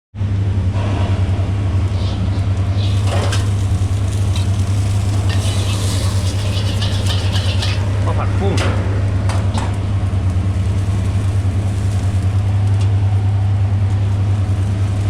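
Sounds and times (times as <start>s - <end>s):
loud low hum: 7.8s - 15.0s.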